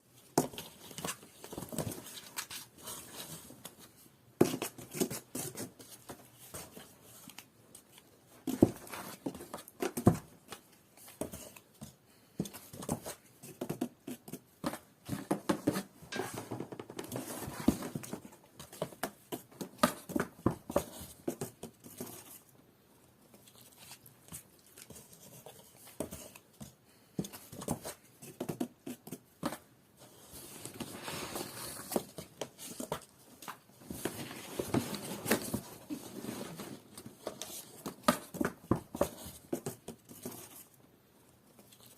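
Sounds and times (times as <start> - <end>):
cat scratching cardboard box: 4.4 - 7.3.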